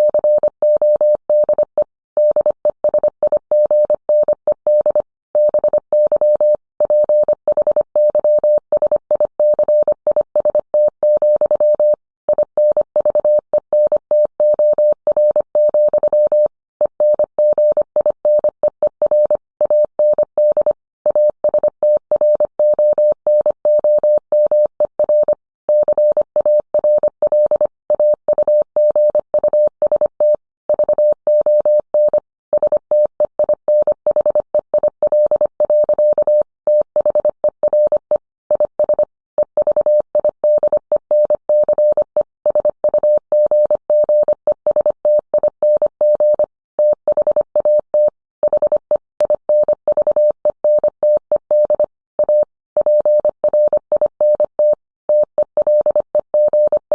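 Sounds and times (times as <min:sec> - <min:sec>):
morse code beeps: 0:00.0 - 0:56.9.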